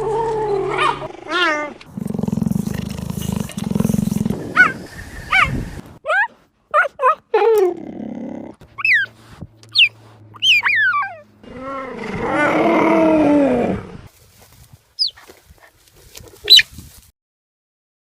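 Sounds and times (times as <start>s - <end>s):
cheetah chirping: 8.8s - 11.2s, 15.0s - 15.2s, 16.4s - 16.7s.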